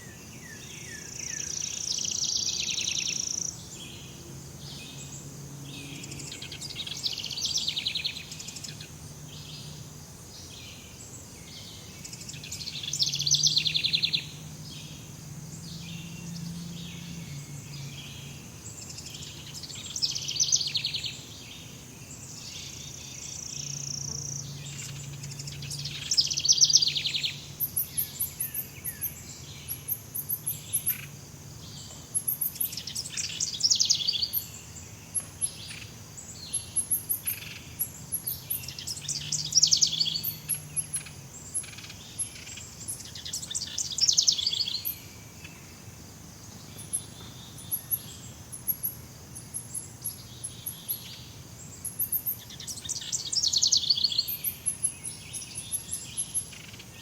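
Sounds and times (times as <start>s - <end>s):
high short insect chirps: 0.0s - 57.0s
insect hum: 0.0s - 57.0s.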